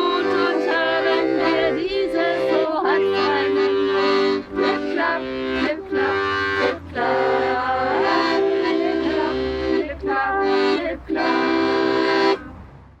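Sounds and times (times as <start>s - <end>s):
accordion playing a folk tune: 0.0s - 12.5s.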